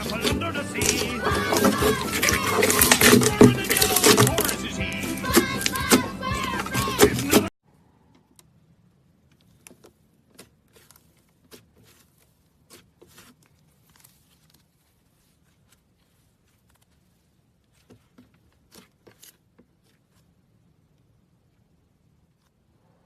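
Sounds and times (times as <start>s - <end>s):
craft material crackling when crushed: 0.0s - 7.5s.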